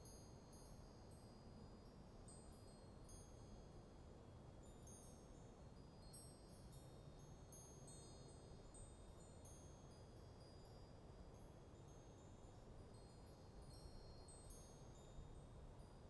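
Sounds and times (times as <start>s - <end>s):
wind chimes tinkling: 12.0s - 16.0s.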